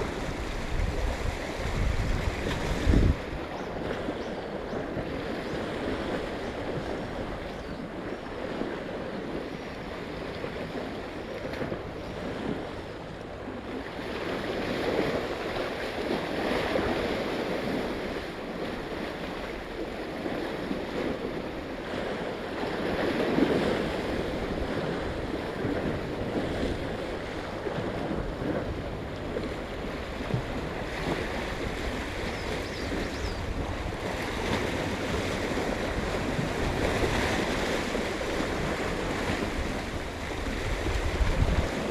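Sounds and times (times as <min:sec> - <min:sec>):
waves washing against rocks: 0:00.0 - 0:07.4, 0:13.9 - 0:41.9
wind buffeting microphone: 0:00.0 - 0:41.9.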